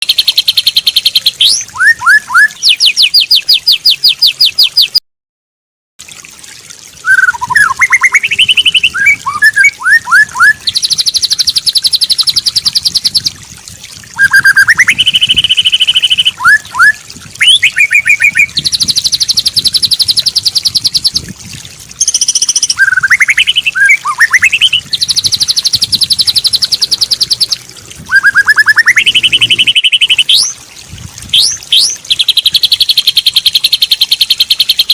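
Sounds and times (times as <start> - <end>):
bird singing trills and whistles: 0.0 - 5.0, 7.0 - 13.3, 14.2 - 21.3, 22.0 - 30.6, 31.3 - 34.9.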